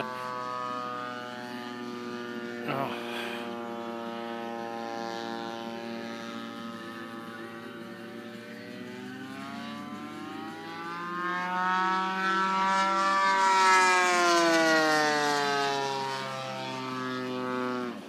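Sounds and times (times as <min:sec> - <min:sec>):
model airplane engine in flight: 0:00.0 - 0:18.0.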